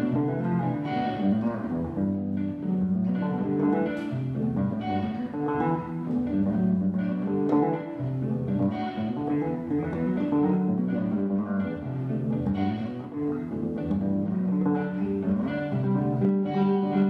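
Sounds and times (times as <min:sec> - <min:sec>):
guitar and bass guitar music: 0:00.0 - 0:17.0.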